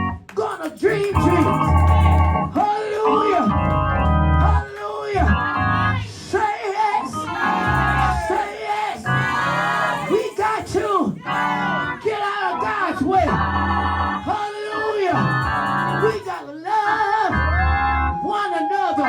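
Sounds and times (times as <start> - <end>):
church organ chords: 0.0 - 0.2, 1.2 - 6.0, 11.2 - 14.3, 15.2 - 16.2, 17.3 - 18.2.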